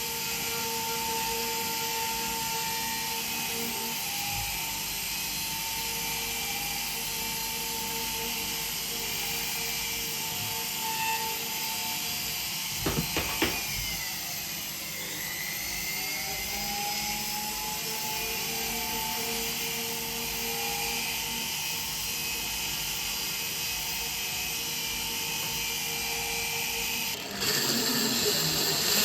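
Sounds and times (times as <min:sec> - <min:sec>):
rotary tool whining: 0:00.1 - 0:29.0
sharp knocks: 0:12.8 - 0:13.9.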